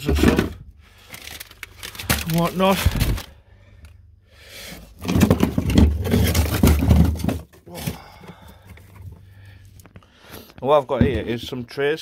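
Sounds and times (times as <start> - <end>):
plastic tubs scraping in freezer: 0.0 - 3.4, 4.6 - 9.3.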